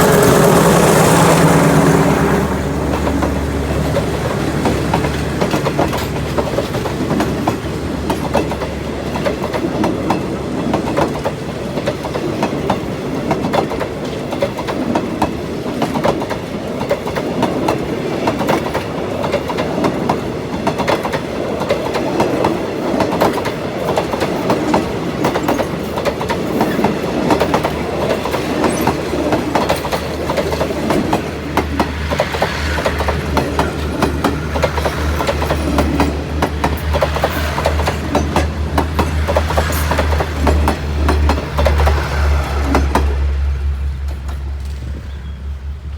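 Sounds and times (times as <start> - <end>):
wheels clattering over rail joints: 0.0 - 45.4
train coaches rushing past: 0.0 - 45.9.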